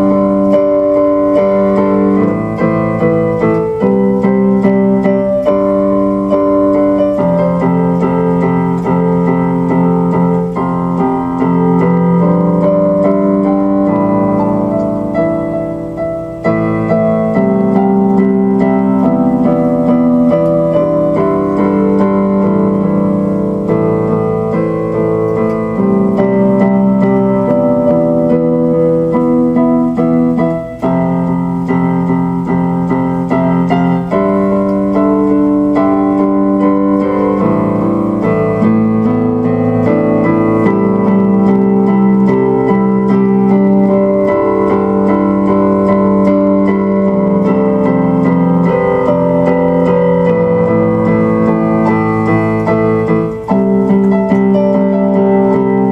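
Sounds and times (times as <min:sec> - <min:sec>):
piano-style keyboard music: 0:00.0 - 0:55.9.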